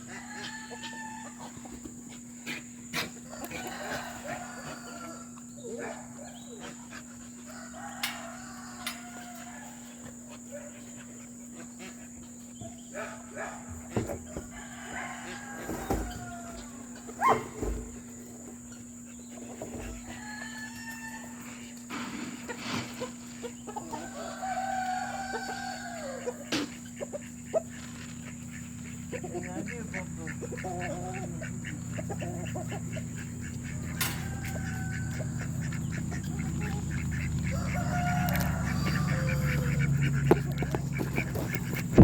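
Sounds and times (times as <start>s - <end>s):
rooster crowing: 0.0s - 1.8s, 3.2s - 6.6s, 7.4s - 10.2s, 13.4s - 17.9s, 19.7s - 21.7s, 23.8s - 27.0s, 28.4s - 42.0s
chickens calling: 0.0s - 42.0s.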